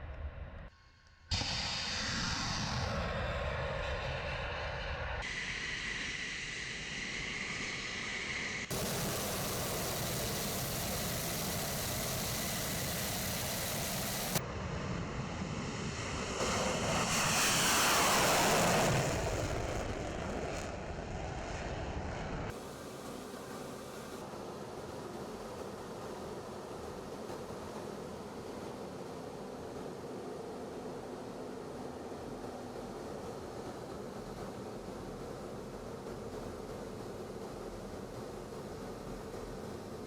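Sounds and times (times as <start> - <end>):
loud rushing jet roar: 1.3 - 14.4, 15.9 - 22.6
jet passing by: 1.3 - 22.6.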